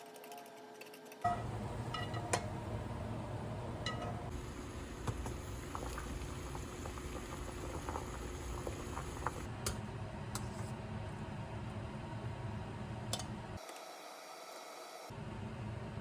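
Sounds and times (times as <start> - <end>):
pot of liquid boiling: 1.3 - 9.5.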